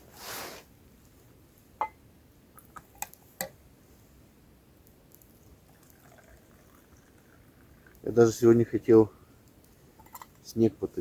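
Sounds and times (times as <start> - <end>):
campfire crackling and popping: 9.4 - 10.5.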